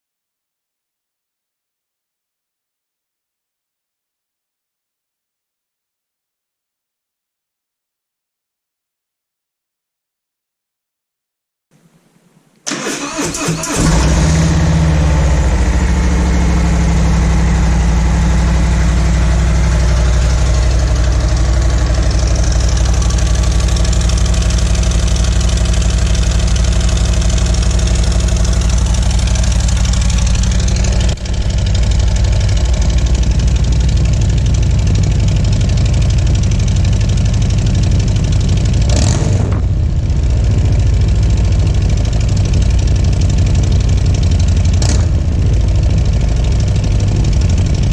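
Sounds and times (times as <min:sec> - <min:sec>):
motorcycle engine idling: 0:13.8 - 0:47.9.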